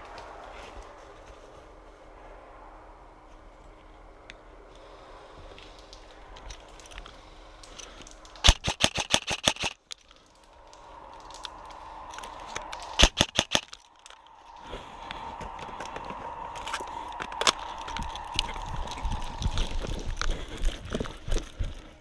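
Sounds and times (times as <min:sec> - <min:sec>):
steady high-pitched hum: 0:00.0 - 0:22.0
crunching of brush and dry leaves: 0:04.9 - 0:22.0
twigs snapping: 0:05.5 - 0:21.9
airsoft gun shots: 0:08.4 - 0:09.8, 0:13.0 - 0:13.6.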